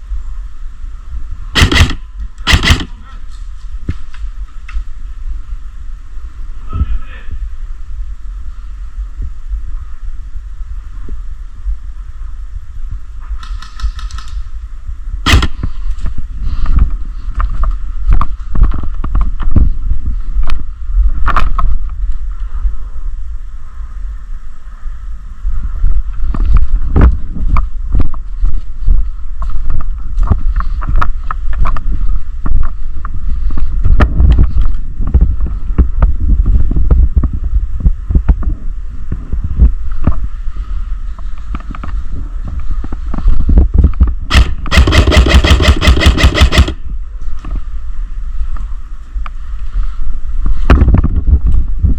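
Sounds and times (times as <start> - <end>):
wind on microphone: 0.0 - 51.9
camera jostling rumble and knocks: 15.3 - 22.0, 26.0 - 28.7, 29.4 - 40.2, 41.4 - 47.6, 50.5 - 51.9.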